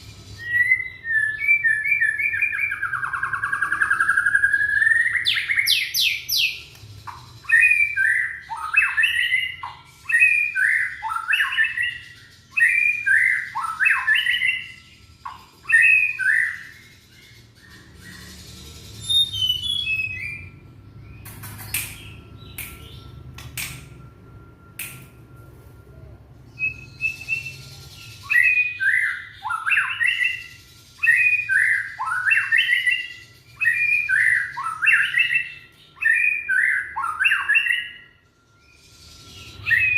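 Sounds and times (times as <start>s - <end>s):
bird chattering song: 0.0s - 24.1s, 26.5s - 39.9s
sharp clicks: 21.2s - 23.9s.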